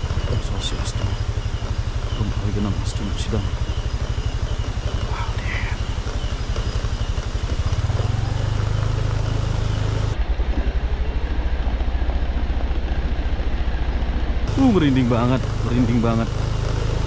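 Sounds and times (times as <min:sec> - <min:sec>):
motorcycle engine running: 0:00.0 - 0:17.0.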